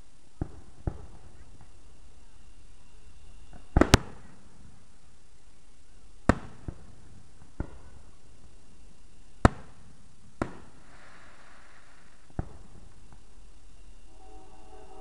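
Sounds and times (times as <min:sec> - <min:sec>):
faint hiss: 0:00.0 - 0:15.0
fireworks bangs: 0:00.4 - 0:02.0, 0:03.2 - 0:04.9, 0:06.2 - 0:08.6, 0:09.4 - 0:15.0.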